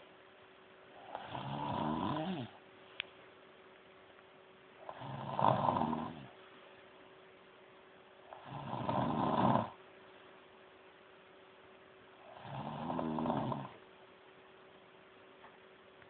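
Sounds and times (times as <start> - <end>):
loud grunting snores: 1.0 - 2.6, 4.8 - 6.3, 8.3 - 9.8, 12.3 - 13.8.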